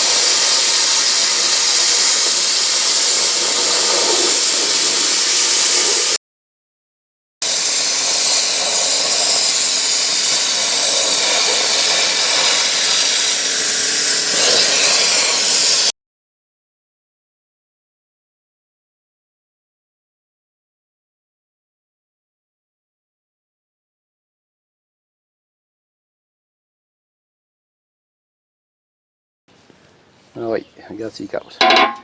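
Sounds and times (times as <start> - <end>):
plasma cutter hissing: 0.0 - 6.2, 7.4 - 15.9.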